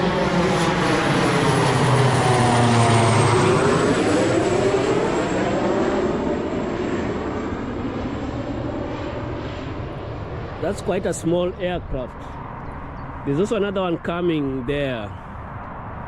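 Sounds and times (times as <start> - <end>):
airliner engines passing overhead: 0.0 - 16.0.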